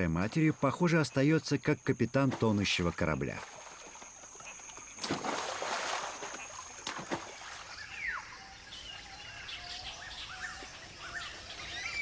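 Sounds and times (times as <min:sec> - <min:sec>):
water splashing: 0:02.2 - 0:08.7.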